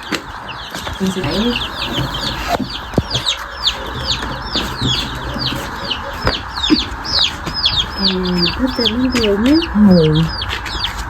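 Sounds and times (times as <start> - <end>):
chickens peeping: 0.0 - 11.0.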